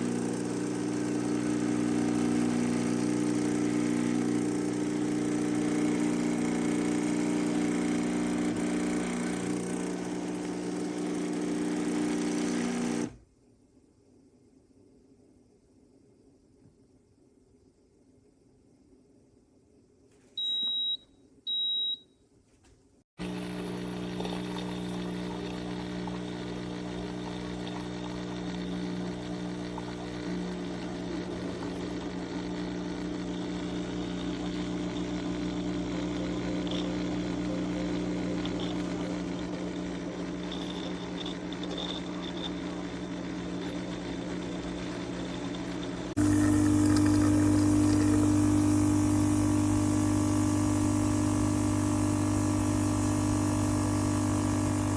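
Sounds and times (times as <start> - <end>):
espresso machine pump humming: 0.0 - 13.2, 23.2 - 54.9
short high beeps: 20.4 - 22.1.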